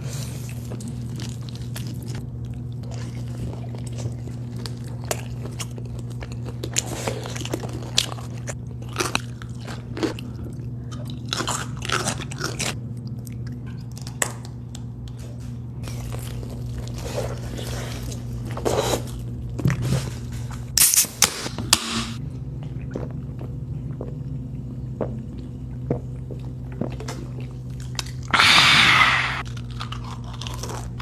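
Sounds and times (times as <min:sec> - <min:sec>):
crunchy bites and chewing: 0:00.0 - 0:14.3, 0:26.1 - 0:31.0
steady low hum: 0:00.0 - 0:31.0.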